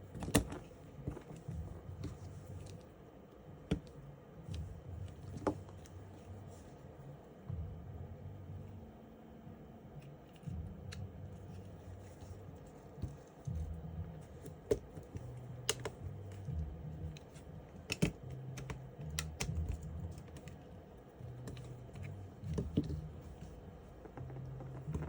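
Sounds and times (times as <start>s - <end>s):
low uneven hum: 0.0s - 25.0s.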